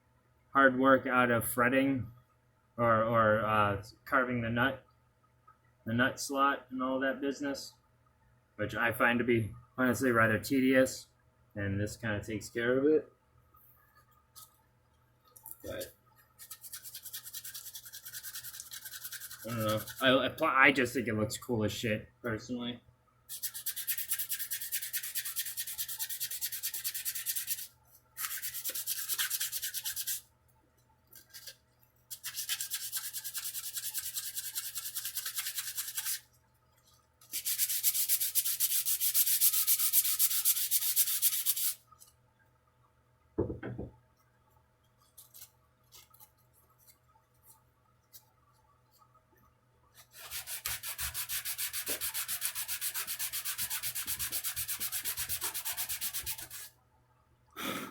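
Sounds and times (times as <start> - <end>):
sandpaper sanding wood: 16.4 - 20.2, 23.3 - 30.2, 32.1 - 36.2, 37.3 - 41.8, 50.1 - 56.7
dull knock: 43.4 - 43.9.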